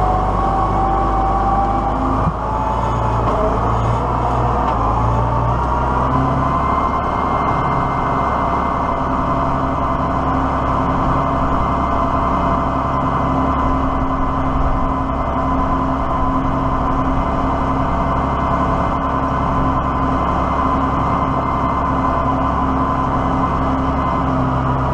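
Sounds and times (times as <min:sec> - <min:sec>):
diesel tractor engine running: 0:00.0 - 0:24.9.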